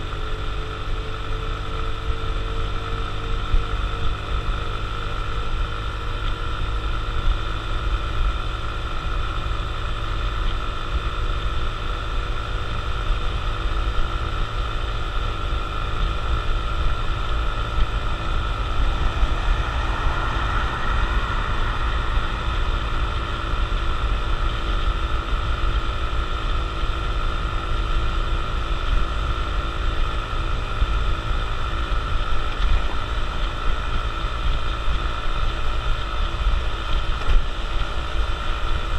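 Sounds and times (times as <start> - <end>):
motorcycle engine running: 0.0 - 38.9
road noise: 0.0 - 38.9
wind noise: 15.9 - 26.6.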